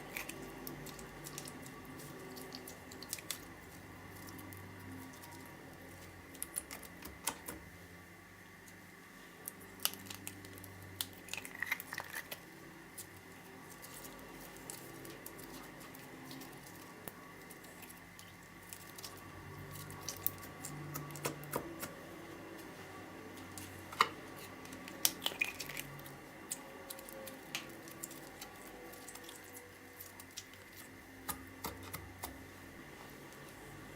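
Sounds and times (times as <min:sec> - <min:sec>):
slime squishing by hand: 0:00.0 - 0:07.7, 0:09.4 - 0:22.0, 0:23.3 - 0:33.7.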